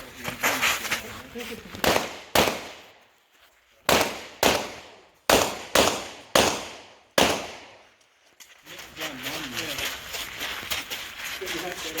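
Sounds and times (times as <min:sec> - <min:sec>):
pistol shots echoing: 0:01.8 - 0:03.0, 0:03.9 - 0:07.9.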